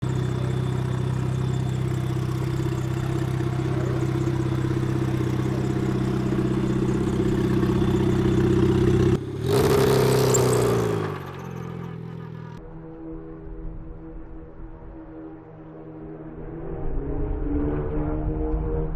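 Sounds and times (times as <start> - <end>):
racecar engine at high revs: 0.0 - 12.6, 16.2 - 18.9
racecar passing at speed: 15.9 - 18.9.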